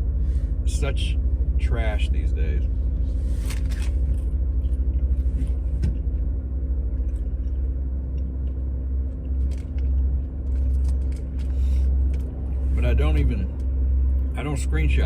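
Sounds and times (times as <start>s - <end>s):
car cabin rumble: 0.0s - 15.0s
constant hum: 0.0s - 15.0s.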